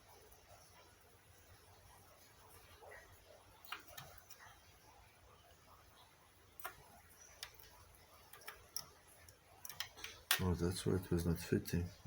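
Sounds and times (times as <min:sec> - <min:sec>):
small hard parts clicking: 0:07.4 - 0:10.6.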